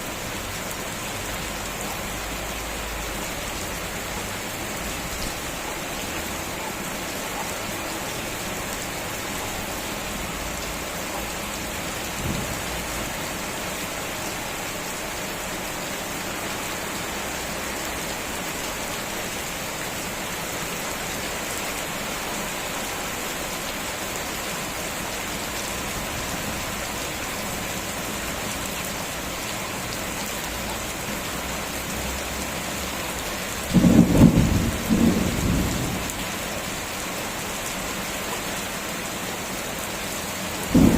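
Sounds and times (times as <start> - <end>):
heavy rain falling: 0.0 - 40.9
low clap of thunder: 33.8 - 36.1.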